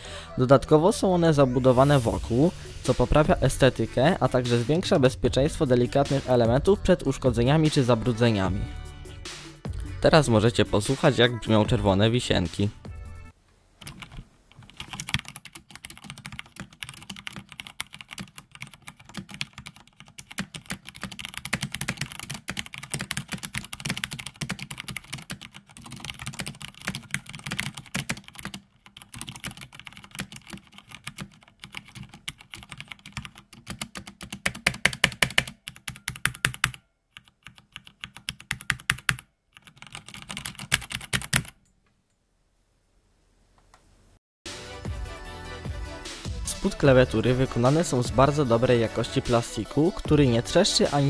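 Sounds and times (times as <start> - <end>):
mechanical keyboard typing: 13.8 - 41.6.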